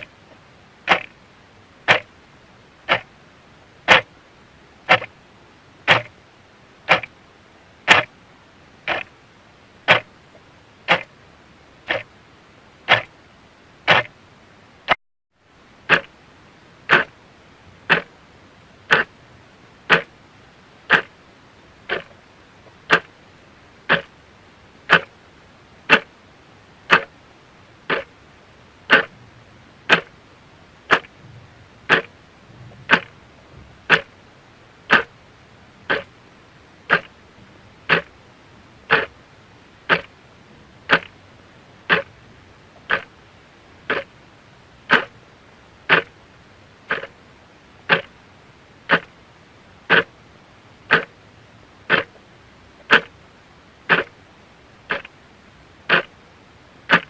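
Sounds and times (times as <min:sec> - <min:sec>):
clock ticking: 0:01.9 - 0:02.1, 0:02.9 - 0:03.1, 0:03.9 - 0:04.1, 0:04.9 - 0:05.1, 0:05.9 - 0:06.1, 0:06.9 - 0:07.1, 0:07.9 - 0:08.1, 0:08.9 - 0:09.1, 0:09.9 - 0:10.1, 0:10.9 - 0:11.1, 0:11.9 - 0:12.1, 0:12.9 - 0:13.1, 0:13.9 - 0:14.1, 0:15.9 - 0:16.1, 0:16.9 - 0:17.1, 0:17.9 - 0:18.1, 0:18.9 - 0:19.1, 0:19.9 - 0:20.1, 0:20.9 - 0:21.1, 0:21.9 - 0:22.1, 0:22.9 - 0:23.1, 0:23.9 - 0:24.1, 0:24.9 - 0:25.1, 0:25.9 - 0:26.1, 0:26.9 - 0:27.1, 0:27.9 - 0:28.1, 0:28.9 - 0:29.1, 0:29.9 - 0:30.1, 0:30.9 - 0:31.2, 0:31.9 - 0:32.1, 0:32.9 - 0:33.1, 0:33.9 - 0:34.1, 0:34.9 - 0:35.1, 0:35.9 - 0:36.1, 0:36.9 - 0:37.2, 0:37.9 - 0:38.1, 0:38.9 - 0:39.2, 0:39.9 - 0:40.1, 0:40.9 - 0:41.2, 0:41.9 - 0:42.1, 0:42.8 - 0:43.1, 0:43.9 - 0:44.1, 0:44.9 - 0:45.1, 0:45.9 - 0:46.1, 0:46.9 - 0:47.1, 0:47.9 - 0:48.1, 0:48.9 - 0:49.1, 0:50.9 - 0:51.1, 0:51.9 - 0:52.2, 0:52.9 - 0:53.2, 0:53.9 - 0:54.1, 0:54.9 - 0:55.1, 0:55.9 - 0:56.1.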